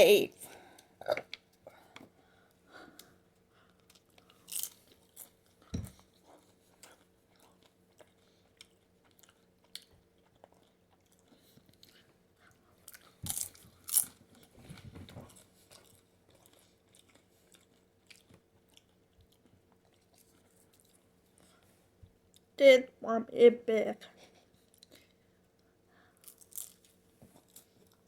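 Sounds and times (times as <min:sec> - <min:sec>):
crunchy food being chewed: 0:03.0 - 0:21.7, 0:26.2 - 0:28.0.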